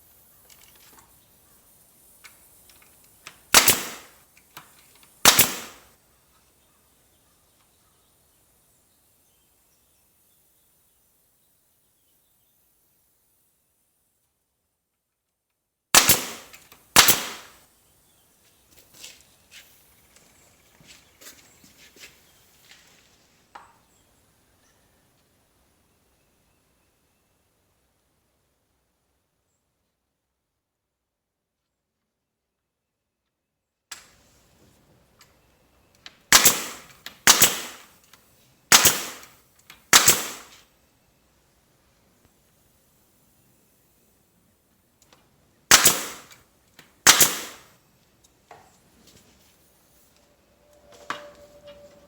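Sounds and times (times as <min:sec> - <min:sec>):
loud sharp bangs ringing: 0:03.6 - 0:04.2, 0:05.3 - 0:05.9, 0:16.0 - 0:17.6, 0:36.4 - 0:37.9, 0:38.7 - 0:39.3, 0:39.9 - 0:40.6, 0:45.7 - 0:46.3, 0:47.1 - 0:47.7.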